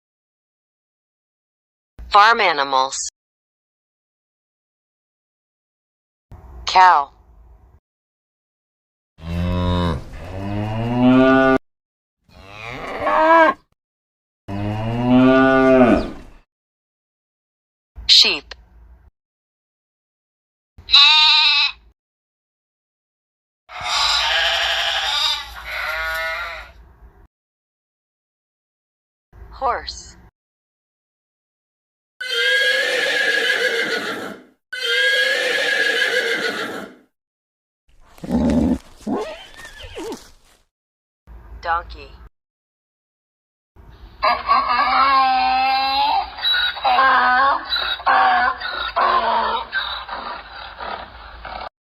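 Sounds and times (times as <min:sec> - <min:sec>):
cow mooing: 0:09.2 - 0:11.6, 0:12.3 - 0:13.6, 0:14.5 - 0:16.2, 0:23.8 - 0:26.7, 0:38.1 - 0:40.6
horse whinnying: 0:12.3 - 0:13.6, 0:15.6 - 0:16.2, 0:20.9 - 0:21.7, 0:23.7 - 0:26.7, 0:32.2 - 0:37.1, 0:38.0 - 0:40.6.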